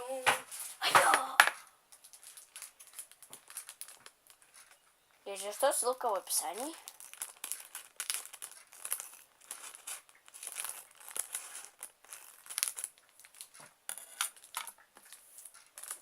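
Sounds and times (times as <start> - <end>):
packaging crinkling and rustling: 2.0 - 4.8, 6.5 - 16.0.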